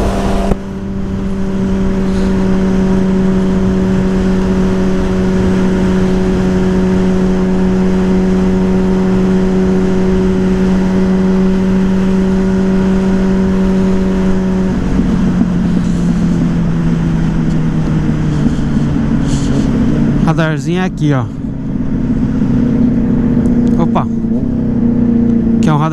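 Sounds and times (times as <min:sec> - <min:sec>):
wind rush: 0:00.0 - 0:25.6
motorcycle engine cruising: 0:00.0 - 0:25.9.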